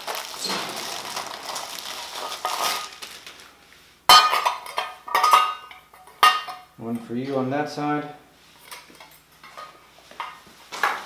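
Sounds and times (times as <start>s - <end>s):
metal cage scraping and rattling: 0.2s - 3.4s.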